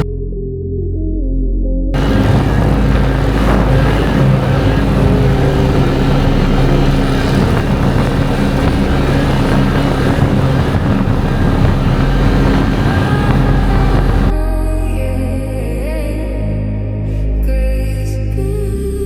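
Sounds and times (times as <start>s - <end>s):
off-road vehicle engines running: 2.0s - 14.3s.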